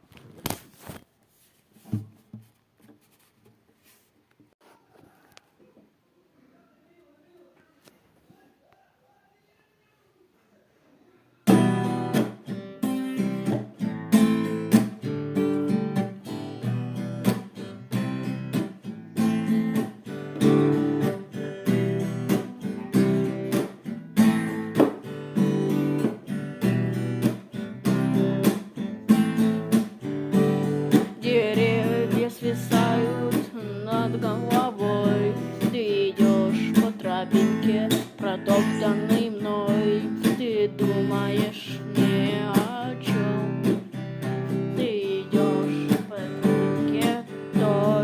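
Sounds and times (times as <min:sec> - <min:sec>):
strummed guitar chords: 0:11.5 - 0:48.0.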